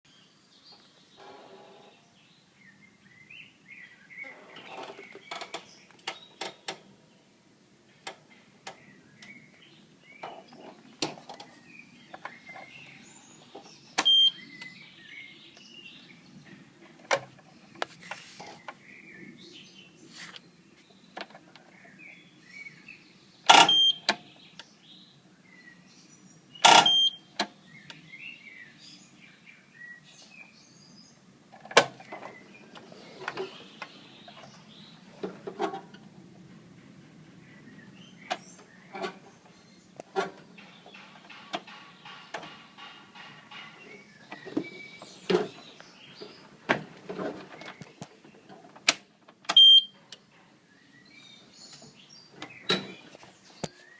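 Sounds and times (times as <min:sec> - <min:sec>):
birds chirping: 0:00.0 - 0:53.9
lawn mower starter clicks: 0:23.5 - 0:24.2, 0:26.6 - 0:27.0.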